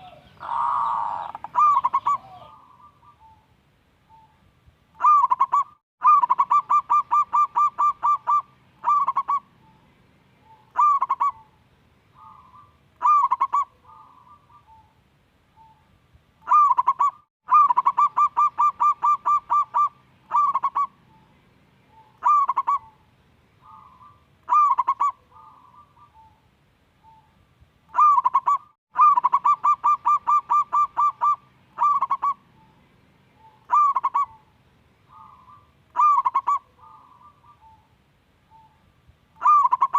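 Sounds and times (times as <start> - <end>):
dove cooing: 0.0 - 3.5, 5.0 - 9.8, 10.4 - 15.0, 16.5 - 21.3, 21.9 - 23.0, 23.6 - 26.4, 27.9 - 32.8, 33.4 - 34.5, 35.1 - 37.9, 39.4 - 39.9.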